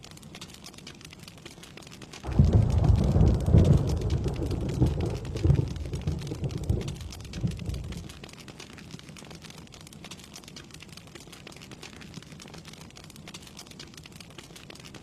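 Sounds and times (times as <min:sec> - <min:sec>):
rain falling: 0:00.0 - 0:15.0
thunder rumbling: 0:02.2 - 0:08.2.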